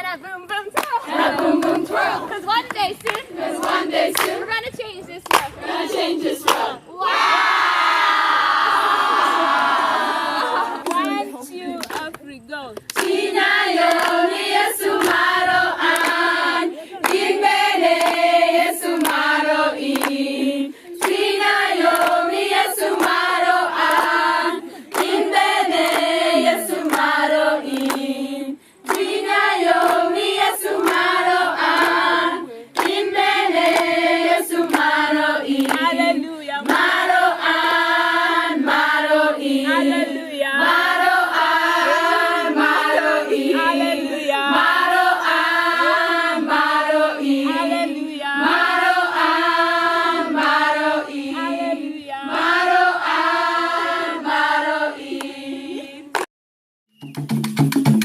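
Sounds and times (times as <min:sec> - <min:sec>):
women singing in unison: 0:00.0 - 0:56.3
hand claps: 0:00.7 - 0:01.9, 0:02.6 - 0:04.4, 0:05.2 - 0:05.6, 0:06.4 - 0:06.7, 0:10.7 - 0:16.3, 0:17.0 - 0:20.2, 0:21.0 - 0:24.2, 0:24.8 - 0:28.1, 0:28.8 - 0:32.1, 0:32.7 - 0:37.0, 0:57.0 - 0:58.0.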